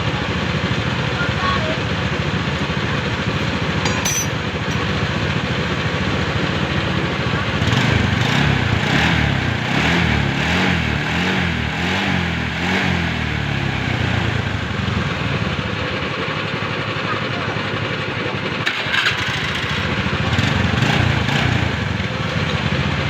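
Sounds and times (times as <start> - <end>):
car engine idling: 0.0 - 9.6, 10.2 - 23.0.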